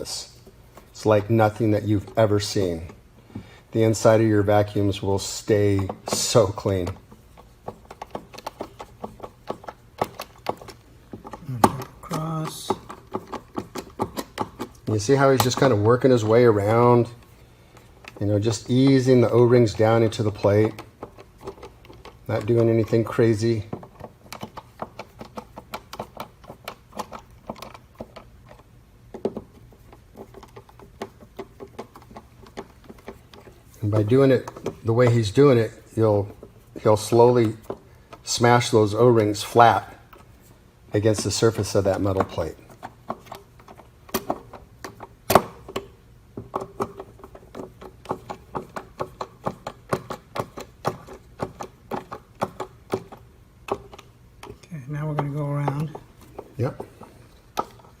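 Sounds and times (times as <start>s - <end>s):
screwdriver clicking: 23.7s - 29.6s.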